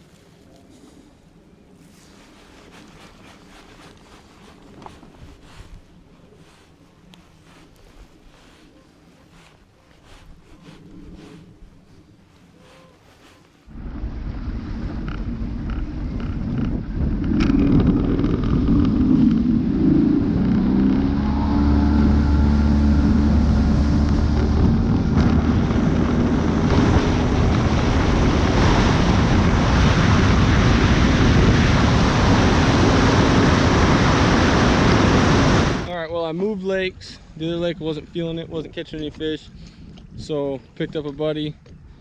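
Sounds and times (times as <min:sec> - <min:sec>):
engine speeding up: 0:13.7 - 0:35.9
wind rushing over microphone: 0:13.7 - 0:41.0.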